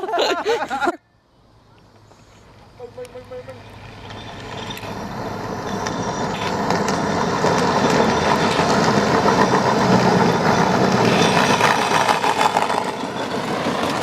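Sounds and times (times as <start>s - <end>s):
toy car wheels rolling on pavement: 2.9s - 14.0s.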